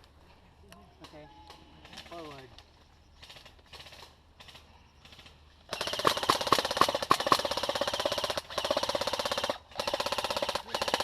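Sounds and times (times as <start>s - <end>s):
airsoft gun firing bursts: 3.2s - 11.0s.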